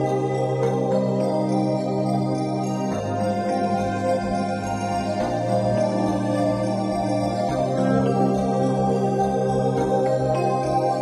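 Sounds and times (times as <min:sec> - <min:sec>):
slow new-age chords: 0:00.0 - 0:11.0.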